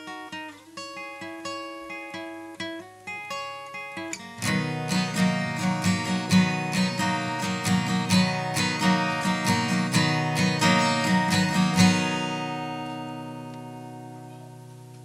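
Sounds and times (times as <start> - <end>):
guitar plucked and strummed: 0.0 - 15.0.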